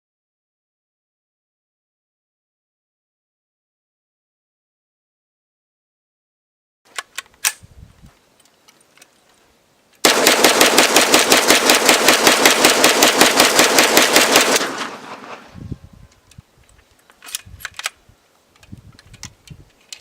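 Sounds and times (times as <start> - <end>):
sharp clicks: 6.9 - 7.6, 16.1 - 20.0
machine gun automatic fire: 10.0 - 15.4.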